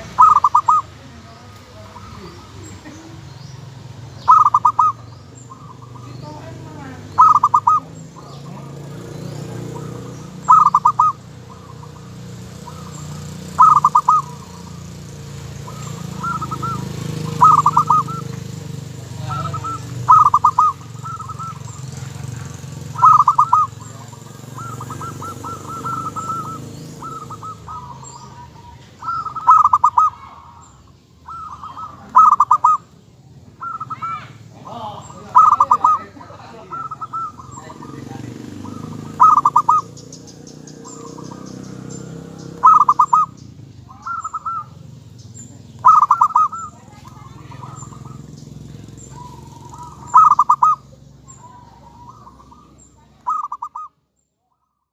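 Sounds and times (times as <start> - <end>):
dove cooing: 0.0 - 53.9.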